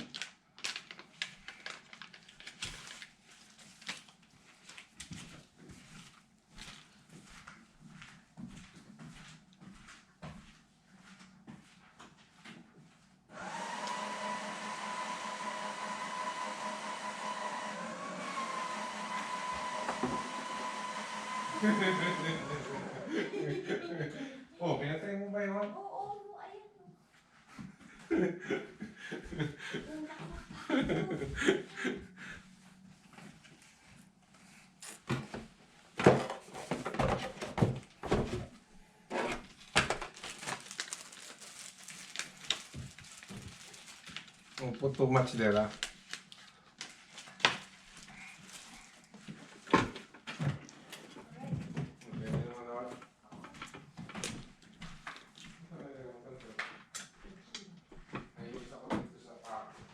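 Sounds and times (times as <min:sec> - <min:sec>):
electric fan whirring: 0:13.3 - 0:23.5
parts knocking and clattering: 0:36.0 - 0:38.5.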